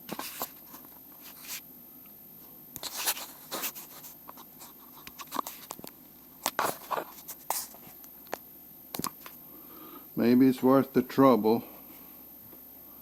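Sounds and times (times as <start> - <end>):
scraping and rustling: 2.8 - 5.8.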